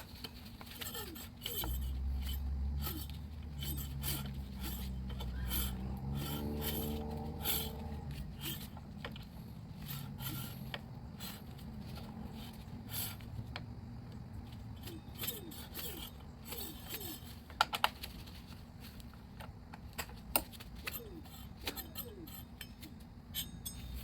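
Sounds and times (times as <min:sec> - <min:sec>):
hand tools and metal parts clinking: 0:00.0 - 0:24.0
short squeaks: 0:00.4 - 0:09.1, 0:09.8 - 0:13.3, 0:14.6 - 0:17.4, 0:20.8 - 0:24.0.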